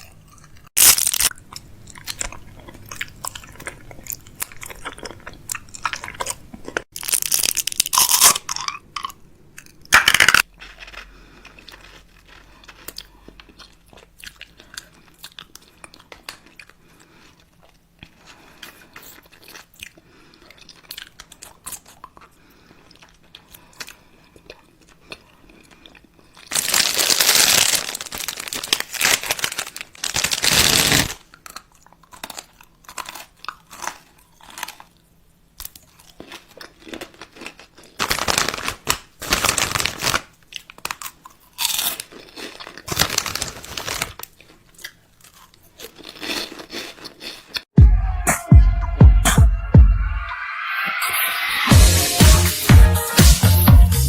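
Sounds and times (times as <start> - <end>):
chewing crunchy food: 0.0 - 38.5, 39.9 - 47.7.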